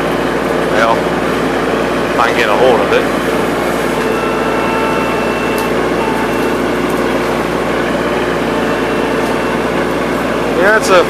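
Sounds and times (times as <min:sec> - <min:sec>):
tractor diesel engine running: 0:00.0 - 0:11.0
faint high whine: 0:02.2 - 0:09.8.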